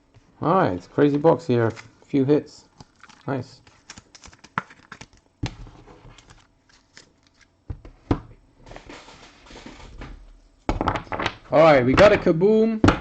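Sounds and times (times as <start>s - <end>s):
cards being shuffled: 3.0s - 7.5s.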